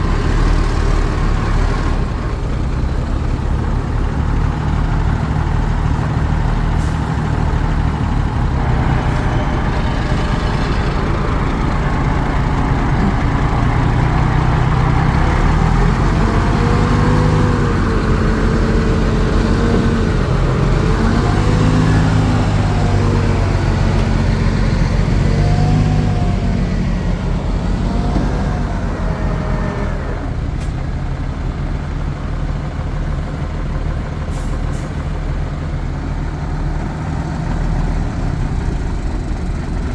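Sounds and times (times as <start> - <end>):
heavy diesel machinery running: 0.0 - 39.9.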